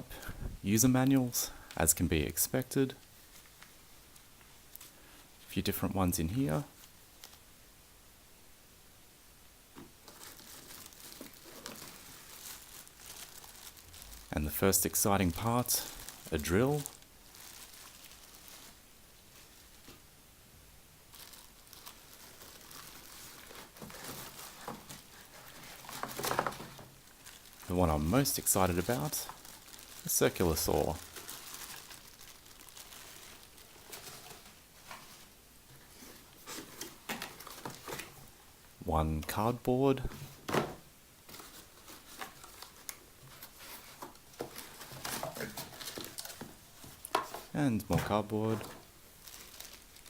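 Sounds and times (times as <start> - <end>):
packaging crinkling and rustling: 6.7 - 7.5, 9.8 - 20.0, 21.1 - 38.4, 40.0 - 50.0.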